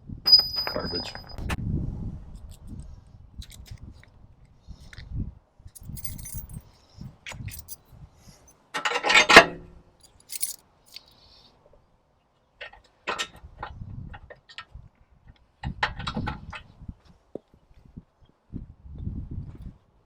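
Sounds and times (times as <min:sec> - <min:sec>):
small metal parts clinking: 0:03.4 - 0:03.8, 0:05.8 - 0:06.7, 0:07.3 - 0:07.8, 0:10.0 - 0:11.1.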